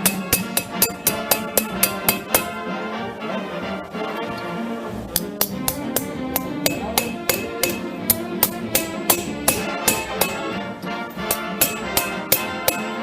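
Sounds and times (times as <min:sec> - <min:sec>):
hammer striking sheet metal: 0:00.0 - 0:02.6, 0:05.1 - 0:10.6, 0:11.2 - 0:13.0
background music with brass: 0:00.0 - 0:13.0.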